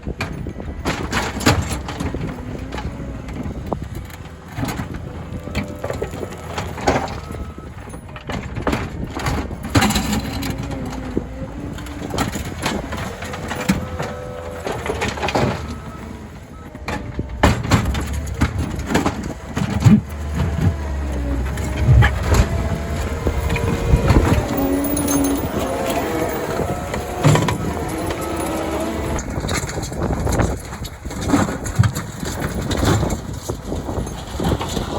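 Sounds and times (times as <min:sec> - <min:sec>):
excavator engine under load: 0:00.0 - 0:34.9
bucket scraping rock: 0:19.8 - 0:34.9.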